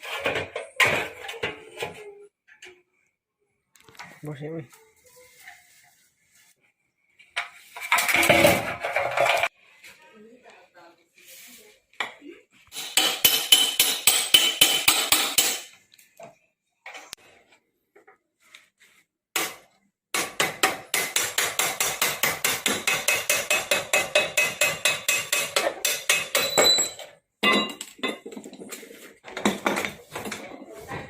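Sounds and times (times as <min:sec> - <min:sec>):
hammer striking metal: 0:12.7 - 0:15.7, 0:20.2 - 0:27.8.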